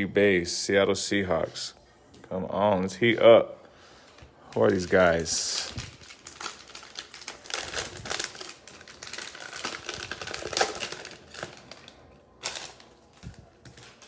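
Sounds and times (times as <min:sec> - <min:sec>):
card wrappers crinkling: 0:04.1 - 0:14.0.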